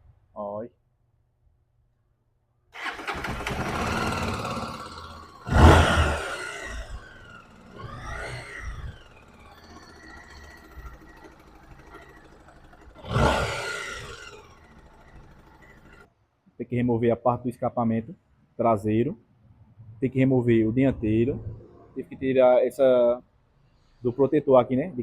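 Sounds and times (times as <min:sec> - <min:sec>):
motorcycle engine revving: 0:02.8 - 0:16.1.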